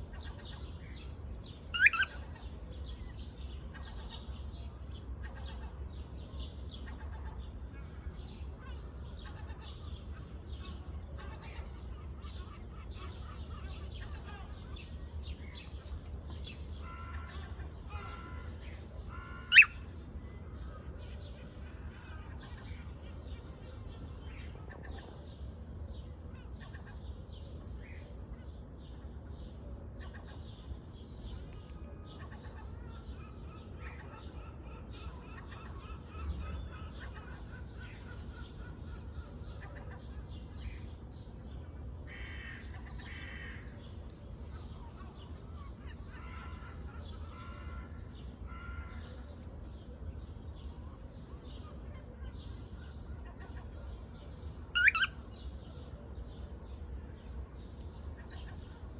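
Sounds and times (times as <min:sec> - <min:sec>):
parrot chirping and squawking: 0:01.7 - 0:02.2, 0:19.4 - 0:19.8, 0:54.7 - 0:55.2.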